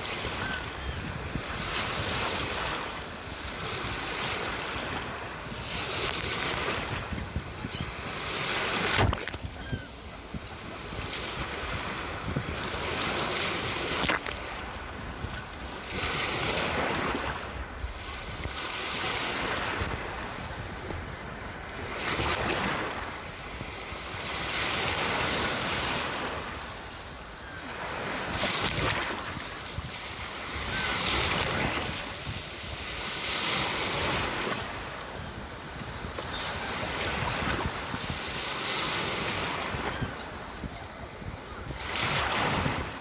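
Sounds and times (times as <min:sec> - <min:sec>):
gentle sea waves: 0:00.0 - 0:43.0
wind rumbling on microphone: 0:00.0 - 0:43.0.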